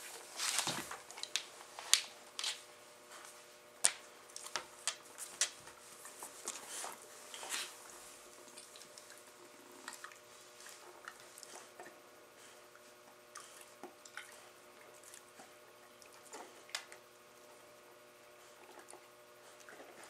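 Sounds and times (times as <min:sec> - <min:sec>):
dogs play-biting and chewing: 0:00.5 - 0:17.1, 0:18.3 - 0:20.0.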